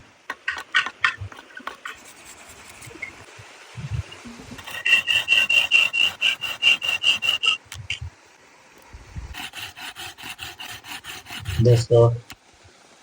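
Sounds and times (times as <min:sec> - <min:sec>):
rhythmic squeaky scraping strokes: 0:04.5 - 0:08.0, 0:09.4 - 0:11.9.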